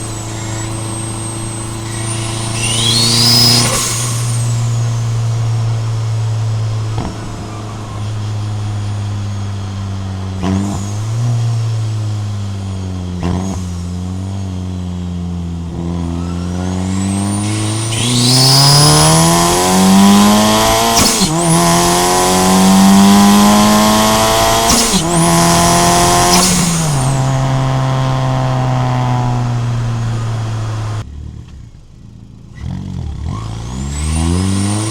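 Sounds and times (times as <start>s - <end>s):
turbo whistle: 0.0s - 6.1s, 15.8s - 29.4s
car engine idling and revving: 0.0s - 34.9s.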